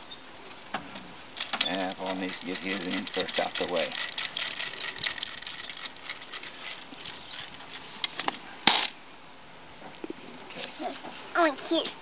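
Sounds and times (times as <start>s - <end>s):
fishing reel clicking: 1.6s - 7.5s.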